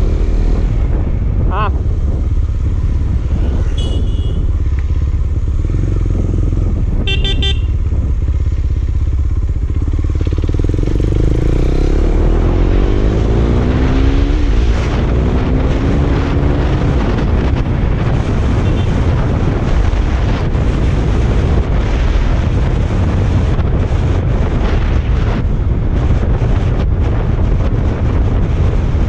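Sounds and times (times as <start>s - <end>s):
motorcycle engine revving: 0.0s - 29.0s
horn beeps: 3.5s - 4.6s, 7.0s - 7.8s.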